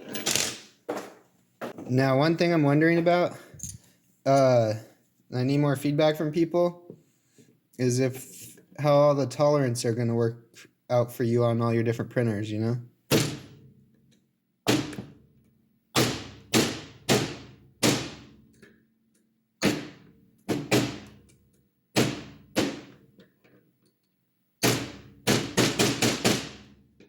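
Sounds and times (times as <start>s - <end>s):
hammer striking plastic: 24.6s - 26.7s.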